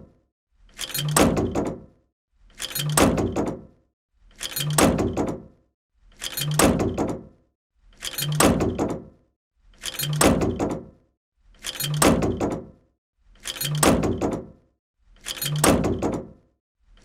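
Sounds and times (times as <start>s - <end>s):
tank door closing with clunks: 1.0s - 1.8s, 8.2s - 9.1s, 10.0s - 10.9s, 11.9s - 12.7s, 13.6s - 14.5s, 15.4s - 16.4s.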